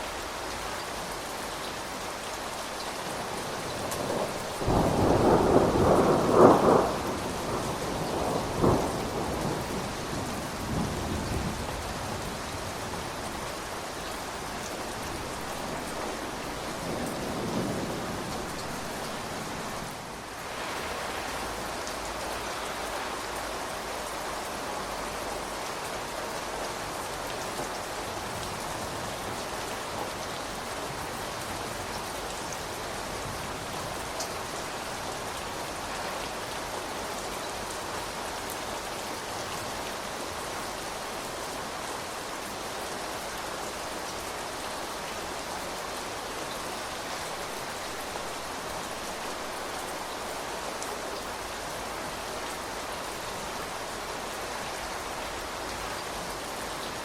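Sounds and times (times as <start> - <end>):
steady rain: 0.0 - 57.0
thunder rumbling and cracking: 3.8 - 12.2.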